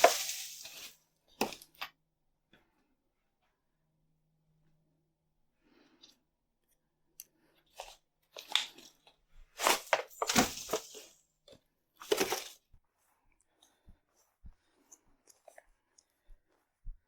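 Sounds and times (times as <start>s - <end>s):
vines and leaves crunching: 0.0s - 0.9s.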